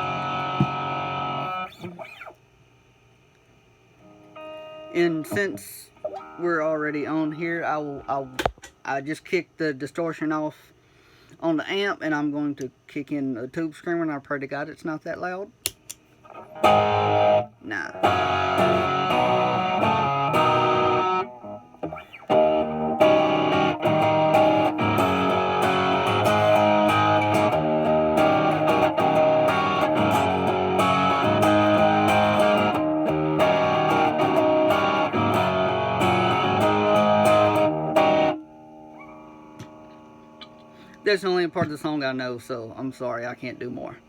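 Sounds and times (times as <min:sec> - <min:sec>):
overdriven electric guitar riff: 0:00.0 - 0:02.4, 0:04.0 - 0:07.4, 0:16.2 - 0:41.1.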